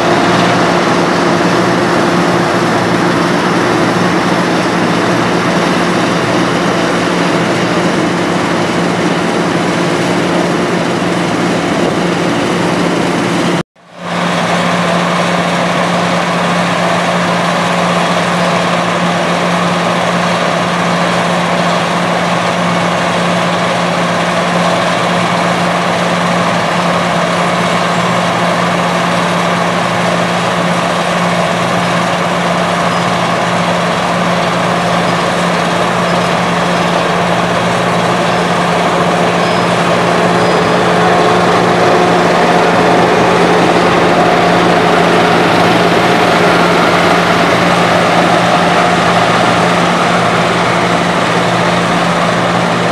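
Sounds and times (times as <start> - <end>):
heavy diesel engines running: 0.0 - 52.9.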